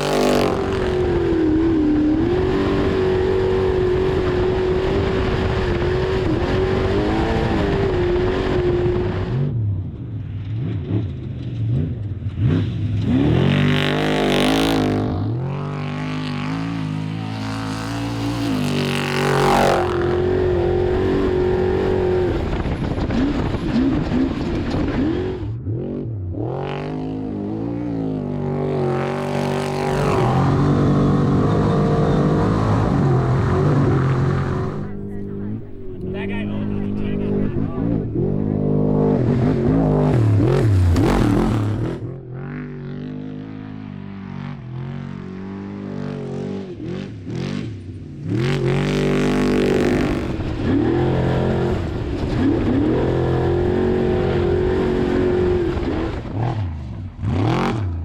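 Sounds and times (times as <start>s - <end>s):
race truck engine revving: 11.8s - 58.0s.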